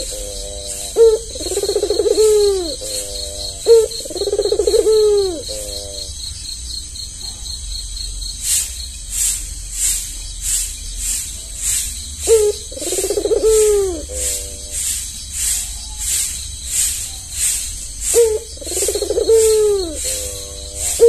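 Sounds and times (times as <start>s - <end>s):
dove cooing: 0.0s - 6.2s, 12.2s - 15.0s, 18.0s - 21.0s
faint fast high chirping: 0.0s - 6.6s, 8.3s - 21.0s.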